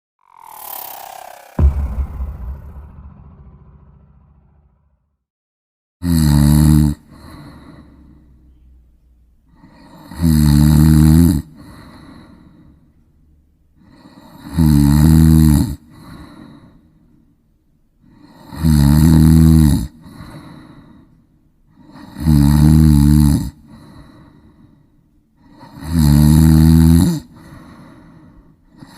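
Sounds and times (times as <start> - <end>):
person snoring: 6.0 - 8.0, 9.6 - 11.9, 13.9 - 15.8, 18.2 - 20.0, 21.8 - 23.6, 25.5 - 27.3
soft breathing: 23.6 - 25.6, 27.3 - 28.8.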